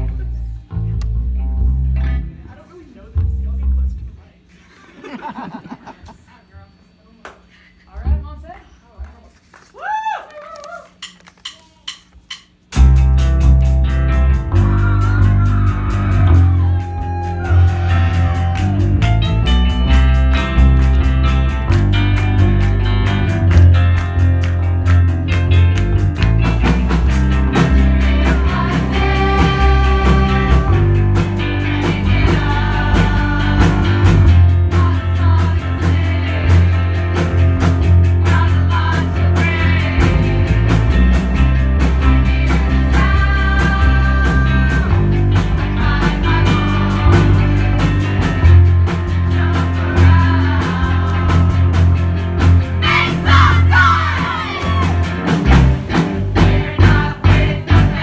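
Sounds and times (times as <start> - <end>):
heavy bass line: 0.0 - 2.6, 12.8 - 58.0
live rock band playing: 12.7 - 58.0
person singing: 14.5 - 18.8, 27.6 - 37.2.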